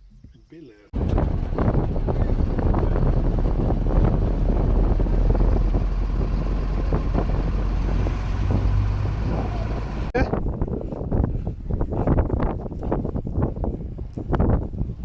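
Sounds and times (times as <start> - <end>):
vehicle engine humming: 1.0 - 10.2
wind buffeting microphone: 1.0 - 15.0.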